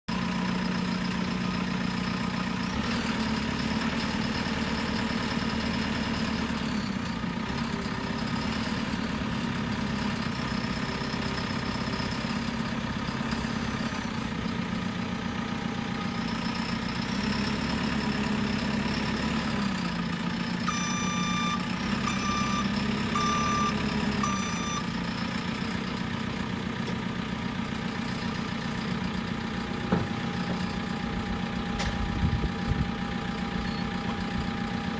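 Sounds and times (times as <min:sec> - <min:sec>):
diesel engine revving: 0:00.1 - 0:34.9
reversing alarm beeps: 0:20.7 - 0:24.9.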